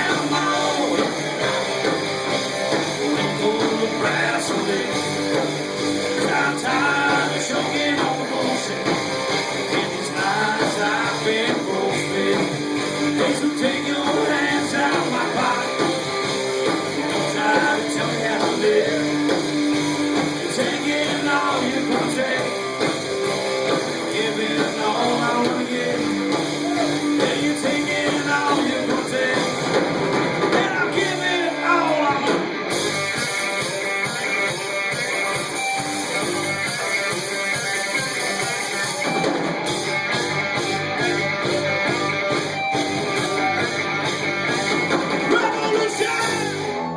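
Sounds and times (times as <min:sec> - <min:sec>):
person singing: 0:00.0 - 0:01.9, 0:02.9 - 0:05.4, 0:06.1 - 0:16.0, 0:17.0 - 0:22.8, 0:24.0 - 0:29.6, 0:30.5 - 0:32.5
rock band playing: 0:00.0 - 0:46.9.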